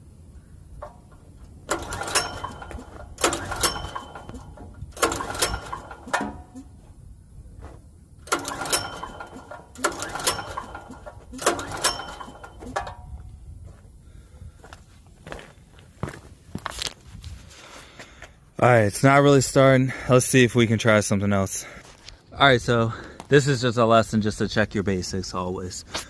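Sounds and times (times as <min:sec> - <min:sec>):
recoil starter rope whirring: 0:00.8 - 0:06.7, 0:08.2 - 0:13.0.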